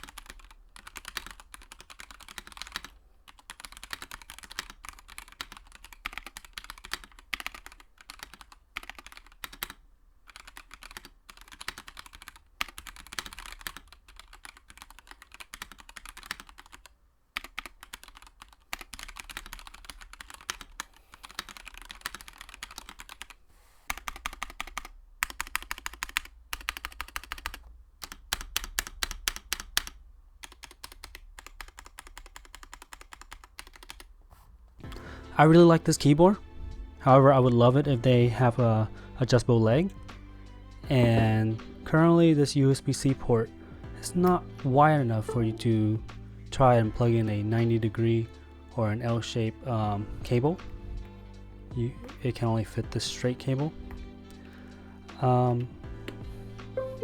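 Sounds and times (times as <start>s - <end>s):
mechanical keyboard typing: 0.0s - 34.2s.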